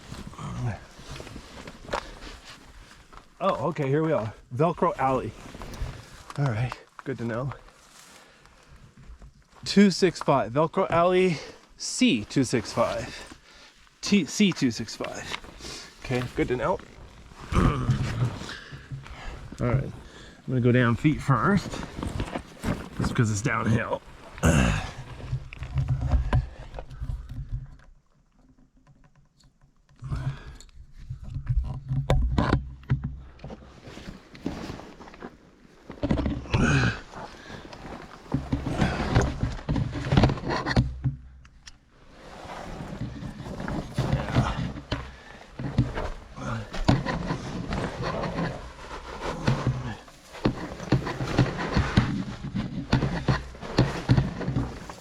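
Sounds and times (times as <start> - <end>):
clothing scraping on rough rock: 0.0 - 27.4, 33.1 - 41.0, 41.8 - 55.0
person panting and grunting: 24.4 - 25.2, 36.5 - 37.7.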